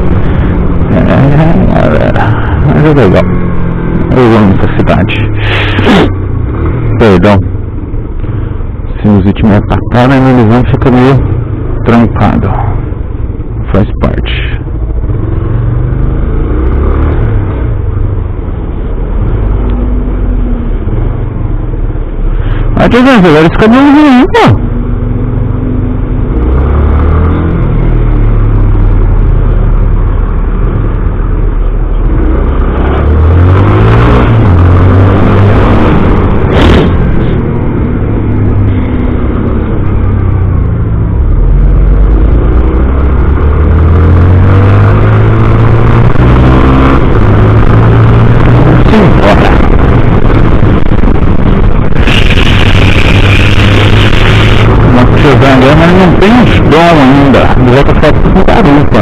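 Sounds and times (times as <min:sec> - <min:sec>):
motorcycle engine revving: 0:14.4 - 0:22.6, 0:23.9 - 0:59.0.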